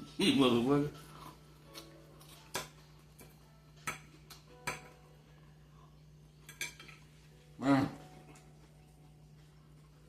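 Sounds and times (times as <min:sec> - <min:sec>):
fork clinking against dish: 0:06.4 - 0:07.1.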